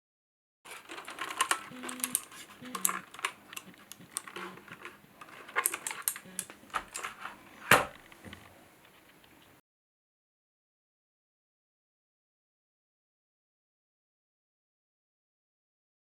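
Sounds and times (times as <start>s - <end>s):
mechanical keyboard key clicks: 0.9s - 7.9s.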